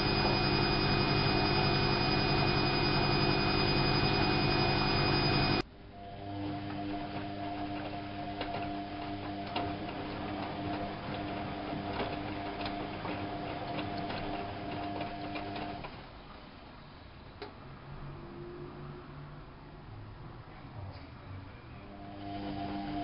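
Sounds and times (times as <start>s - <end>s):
washing machine motor hum: 0.0s - 16.3s, 21.8s - 23.0s
washing machine clicks: 7.5s - 15.9s.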